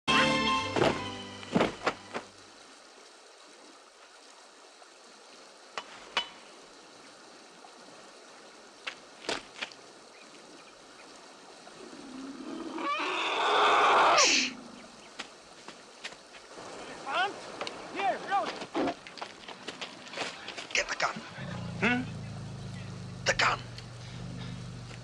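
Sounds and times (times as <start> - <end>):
elephant trumpeting: 21.2 - 25.0.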